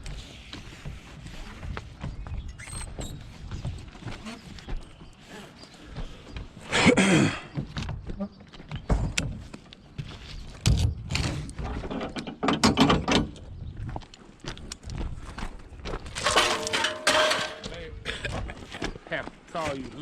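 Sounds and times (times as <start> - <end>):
heavy thuds: 16.2 - 17.7
loud metal scraping: 16.2 - 17.7
scrap metal knocks and clanks: 16.2 - 17.8.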